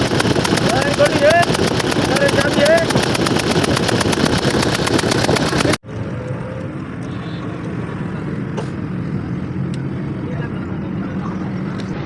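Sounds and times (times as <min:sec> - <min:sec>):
engine running with ticking: 0:00.0 - 0:07.2.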